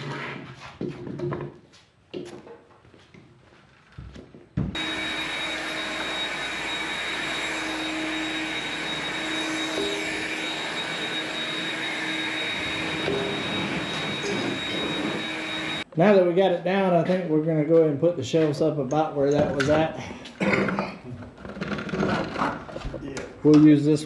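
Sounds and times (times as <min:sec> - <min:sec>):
motor running: 0:04.8 - 0:15.8
high thin whine: 0:04.8 - 0:15.9.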